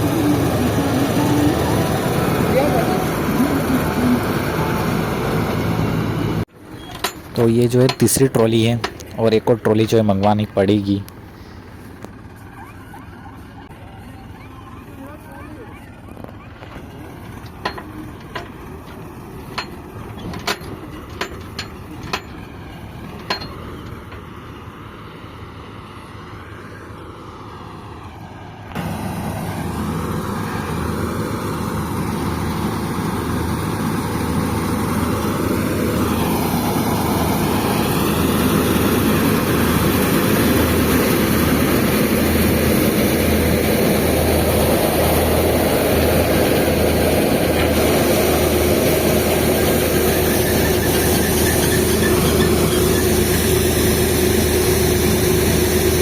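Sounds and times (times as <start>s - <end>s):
diesel engine running: 0.0s - 56.0s
sharp knocks or clanks: 6.7s - 10.5s, 23.1s - 24.3s.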